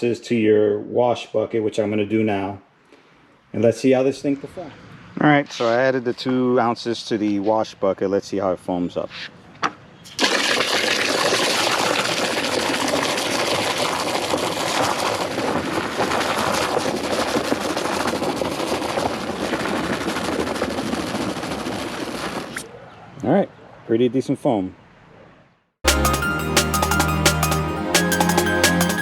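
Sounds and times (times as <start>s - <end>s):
water spraying hard: 10.1s - 22.7s.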